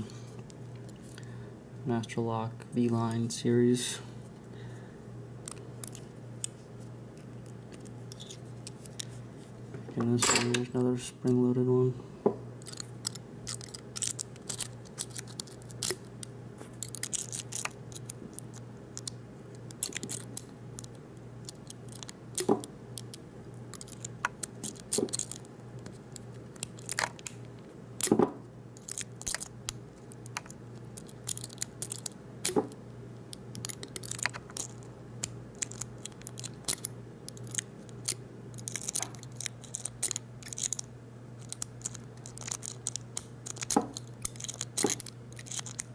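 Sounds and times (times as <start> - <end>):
steady low hum: 0.0 - 45.9
lock pick clicking and scraping: 12.6 - 16.0, 35.6 - 45.9.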